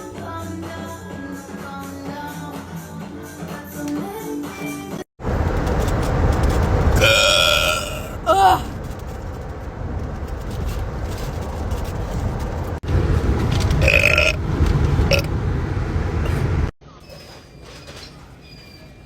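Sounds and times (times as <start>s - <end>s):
person burping: 7.0s - 8.7s, 13.8s - 14.4s.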